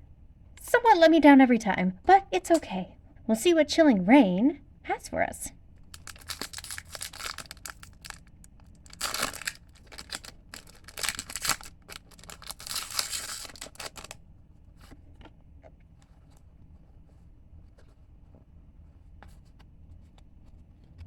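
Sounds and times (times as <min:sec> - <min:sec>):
foil wrapper tearing and crinkling: 0:05.9 - 0:14.2.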